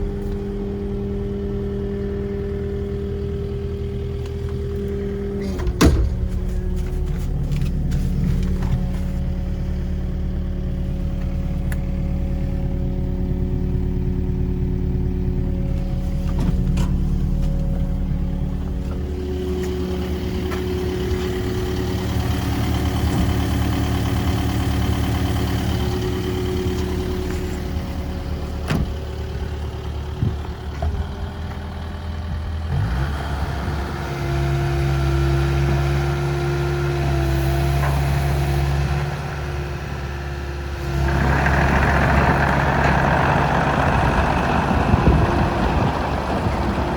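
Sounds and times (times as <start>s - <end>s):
excavator diesel engine running: 0.0s - 46.9s.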